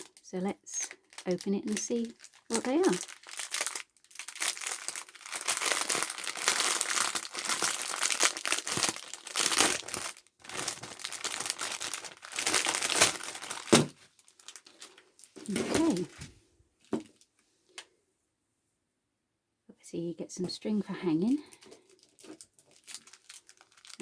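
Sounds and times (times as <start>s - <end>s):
plastic packaging crinkling and tearing: 0.0s - 16.3s, 21.5s - 24.0s.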